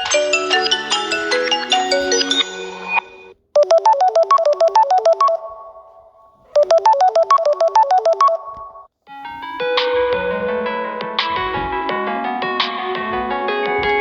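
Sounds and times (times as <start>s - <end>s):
phone ringtones: 0.0s - 5.9s, 6.6s - 8.9s.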